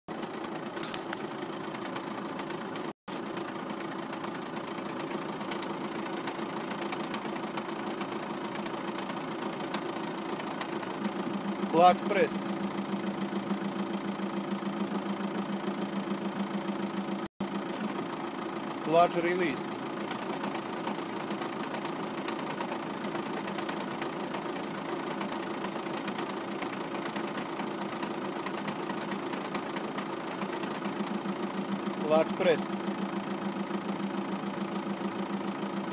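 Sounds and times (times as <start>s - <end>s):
diesel engine idling with clatter: 0.1s - 35.9s.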